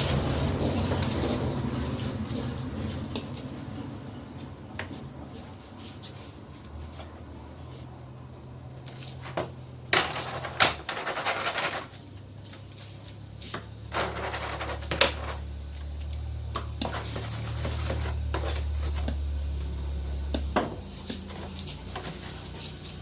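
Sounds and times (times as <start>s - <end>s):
metal parts knocking and scraping: 9.1s - 12.0s, 13.5s - 15.5s.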